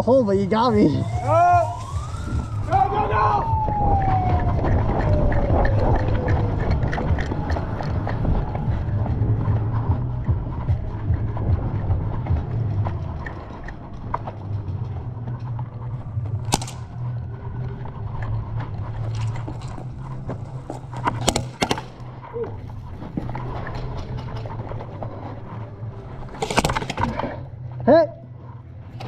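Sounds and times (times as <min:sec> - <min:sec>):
low rumble: 0:00.0 - 0:26.4
knocks and rattles: 0:03.5 - 0:27.5
sharp cracks: 0:10.5 - 0:25.5, 0:26.1 - 0:27.5.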